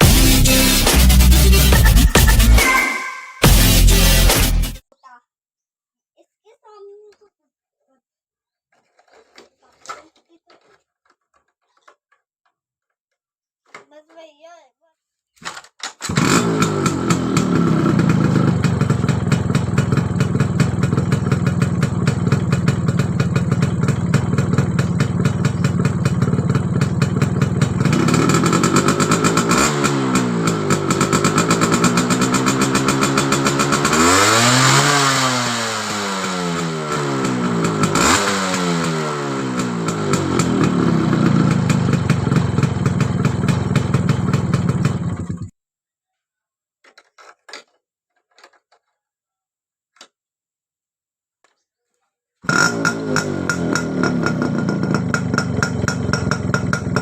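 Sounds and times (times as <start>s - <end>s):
two-stroke motorcycle engine revving: 0.0s - 2.6s, 16.1s - 45.5s, 52.4s - 57.0s.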